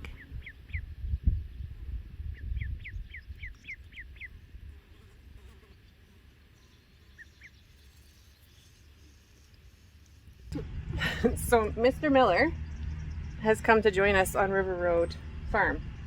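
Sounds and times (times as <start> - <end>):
low rumble: 10.4 - 16.0.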